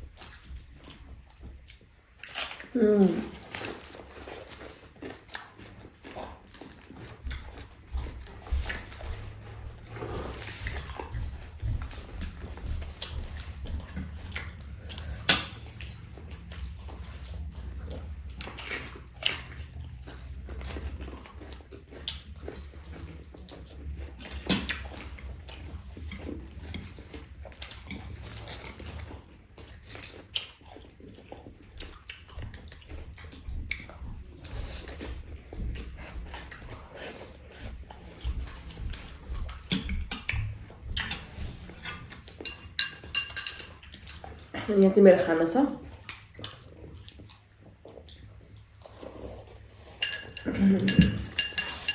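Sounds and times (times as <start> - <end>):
food crunching and chewing: 0.0 - 51.9
low steady hum: 6.4 - 30.2.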